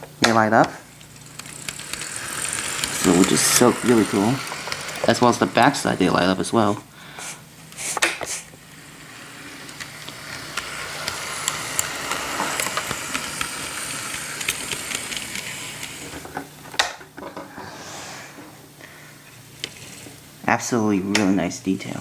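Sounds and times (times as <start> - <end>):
model train whirring on track: 0.0 - 16.8, 19.3 - 22.0
sharp clicks: 0.1 - 6.0.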